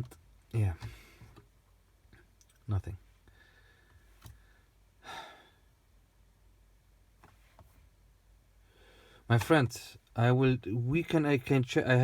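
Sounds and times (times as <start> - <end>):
person sighing: 5.0 - 5.6.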